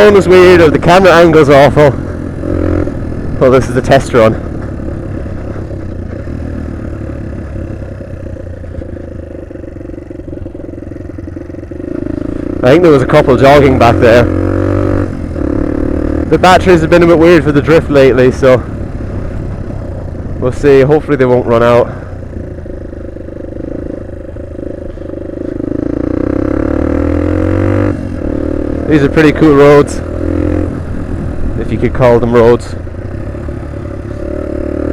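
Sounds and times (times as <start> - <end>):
motorbike engine running: 0.0 - 34.9
small motorbike engine accelerating: 21.2 - 31.5, 33.0 - 34.9.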